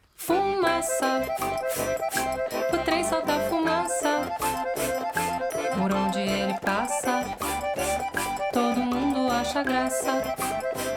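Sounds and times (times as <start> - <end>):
bouncy children's music: 0.2 - 10.9.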